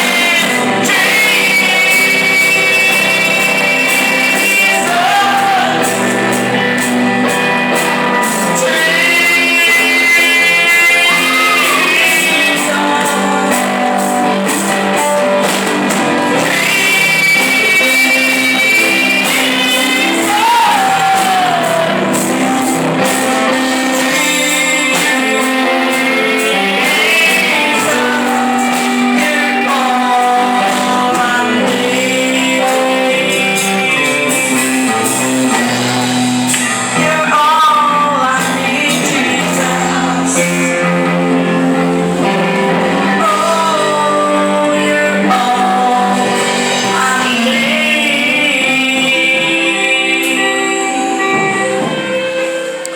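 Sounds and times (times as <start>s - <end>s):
live band with guitar: 0.0s - 52.9s
woman singing: 23.7s - 34.2s, 43.0s - 51.6s.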